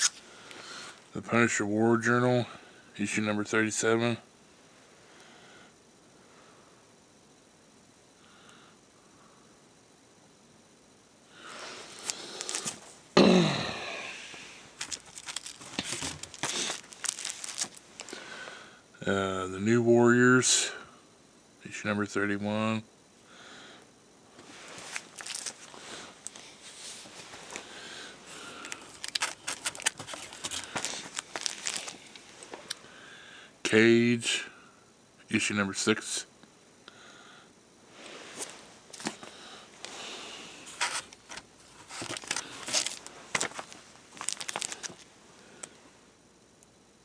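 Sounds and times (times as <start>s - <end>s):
comic books rustling: 11.6s - 13.0s, 14.3s - 18.1s, 24.4s - 32.6s, 38.2s - 39.4s, 40.6s - 45.1s
paper and plastic crinkling: 11.9s - 12.8s, 14.8s - 18.2s, 24.7s - 27.6s, 28.6s - 32.5s, 40.6s - 45.1s
man's loud vocal outburst: 13.2s - 14.3s.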